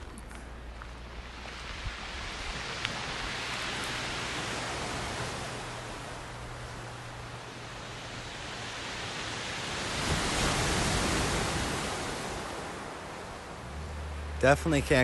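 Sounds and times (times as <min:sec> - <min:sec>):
ocean surf: 0:00.0 - 0:15.0.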